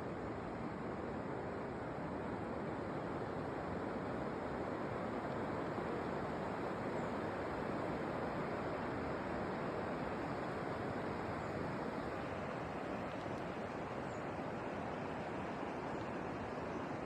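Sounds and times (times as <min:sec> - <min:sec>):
steady rushing nature ambience: 0:00.0 - 0:17.0.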